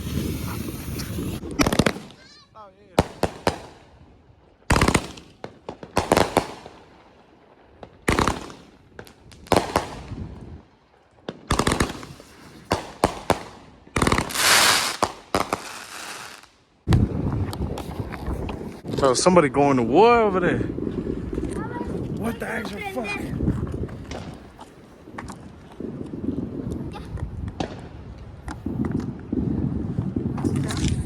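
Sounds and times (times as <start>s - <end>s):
firework crackling burst: 0.0s - 2.4s, 11.5s - 16.6s
firework bangs: 0.0s - 3.9s, 4.7s - 7.0s, 7.8s - 10.4s, 11.3s - 18.0s.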